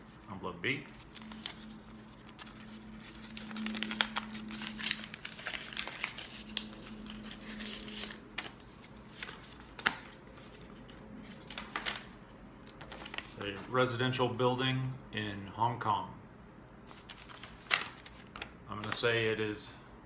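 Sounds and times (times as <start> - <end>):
paper crinkling and rustling: 0.9 - 14.0, 16.9 - 19.3.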